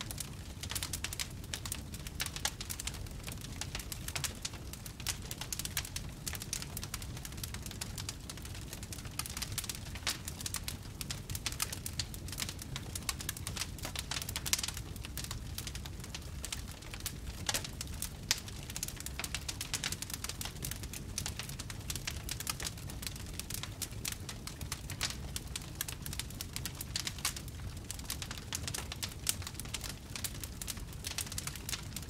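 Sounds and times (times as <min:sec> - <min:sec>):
low rumble of flames: 0:00.0 - 0:32.0
wood fire crackling: 0:00.0 - 0:32.0.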